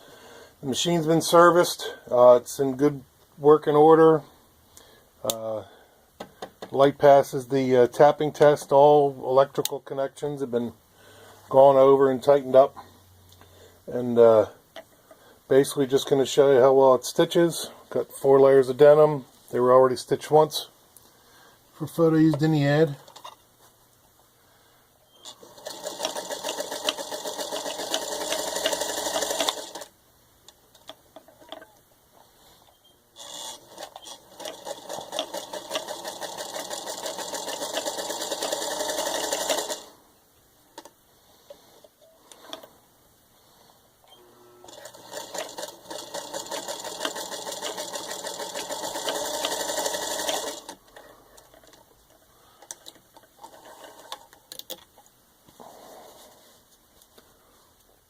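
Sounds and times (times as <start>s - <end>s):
sewing machine stitching: 25.2s - 29.9s, 33.2s - 39.9s, 44.6s - 50.8s.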